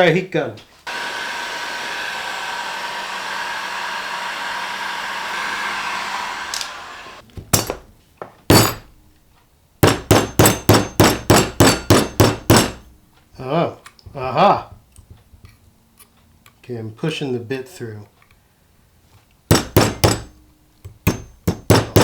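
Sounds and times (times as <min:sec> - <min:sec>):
heat gun blowing: 0:00.9 - 0:07.2
hammer strikes: 0:07.5 - 0:07.9, 0:08.5 - 0:09.0, 0:09.8 - 0:12.9, 0:19.5 - 0:22.0.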